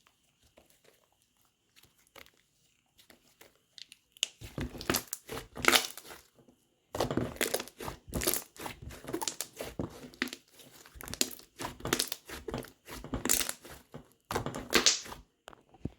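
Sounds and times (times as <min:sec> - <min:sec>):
slime crackling and popping: 0:03.7 - 0:06.2, 0:07.3 - 0:13.8, 0:14.7 - 0:15.2.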